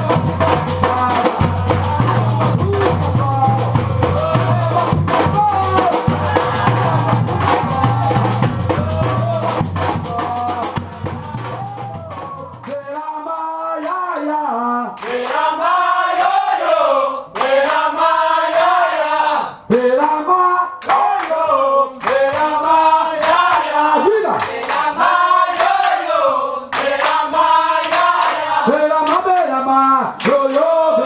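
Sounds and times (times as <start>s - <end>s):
group of voices singing: 0.0s - 31.0s
rhythmic hand clapping: 4.2s - 12.9s, 13.8s - 19.4s, 20.8s - 31.0s.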